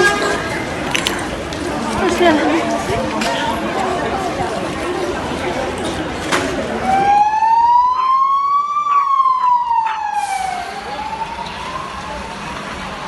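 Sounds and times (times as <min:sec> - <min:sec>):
emergency siren wailing: 0:06.8 - 0:12.9.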